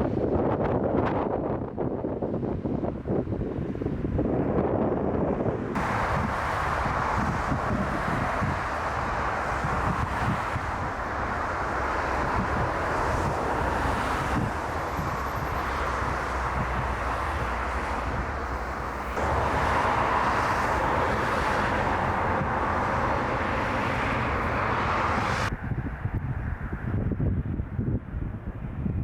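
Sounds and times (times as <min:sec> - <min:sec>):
wind rumbling on microphone: 0:00.0 - 0:29.0
jet engines running: 0:05.8 - 0:25.5.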